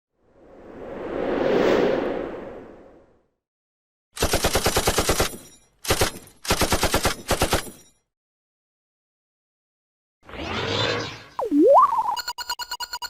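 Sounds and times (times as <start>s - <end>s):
whoosh: 0.2s - 3.2s
machine-gun automatic fire: 4.2s - 7.8s.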